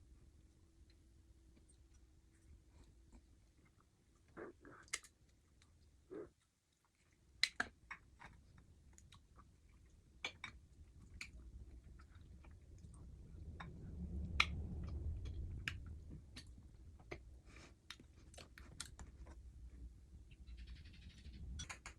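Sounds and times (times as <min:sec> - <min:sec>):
person chewing food: 0:01.5 - 0:13.8
mouth clicks and crunches: 0:01.6 - 0:19.6
low rumble: 0:10.8 - 0:17.6.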